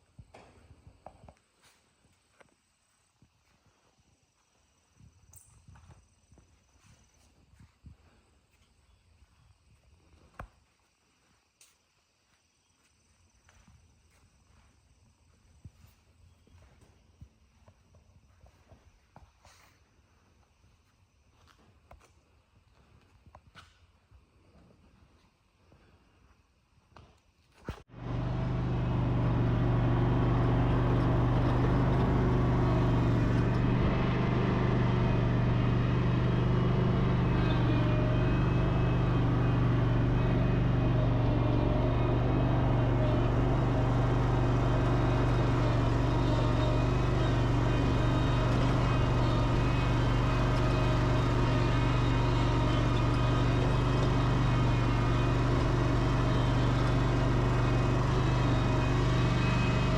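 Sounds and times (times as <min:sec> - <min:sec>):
mower engine droning: 0:27.8 - 0:59.9.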